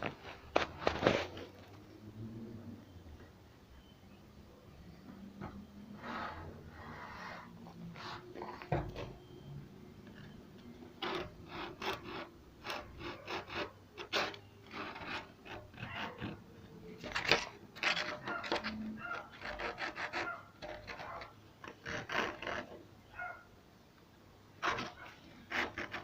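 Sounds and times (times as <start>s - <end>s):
hand tool rasping strokes: 11.0s - 16.4s, 17.0s - 22.8s, 24.6s - 26.0s.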